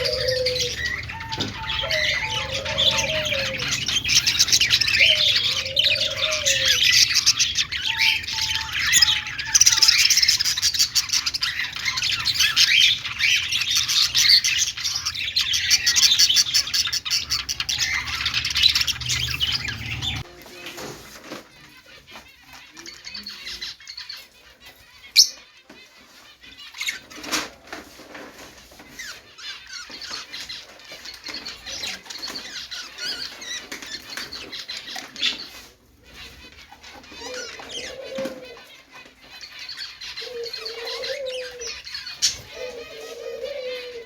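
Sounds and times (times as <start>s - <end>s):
budgerigars chattering: 0.0s - 20.3s
lower wavering bird calls: 0.0s - 20.3s, 40.1s - 44.0s.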